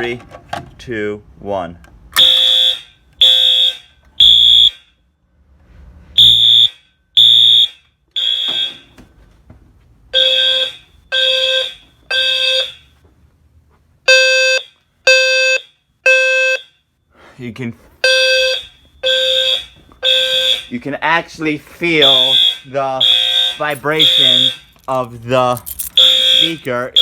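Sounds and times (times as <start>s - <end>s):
fire alarm horns: 2.2s - 5.1s, 6.2s - 9.1s, 10.1s - 13.0s, 14.1s - 16.8s, 18.0s - 21.1s, 21.8s - 25.1s, 25.9s - 27.0s.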